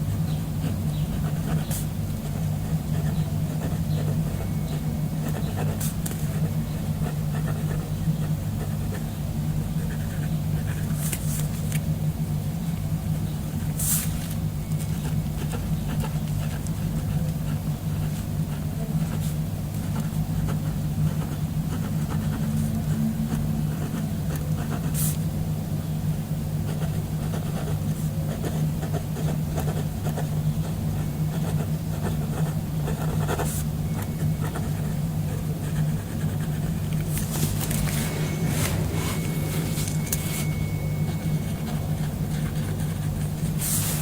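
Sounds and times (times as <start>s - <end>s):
steady low hum: 0.0s - 44.0s.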